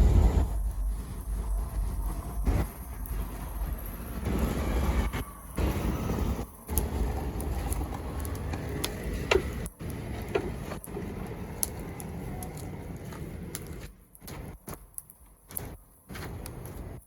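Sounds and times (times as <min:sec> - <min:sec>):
low steady fire rumble: 0:00.0 - 0:17.0
wood fire crackling and popping: 0:00.0 - 0:17.0.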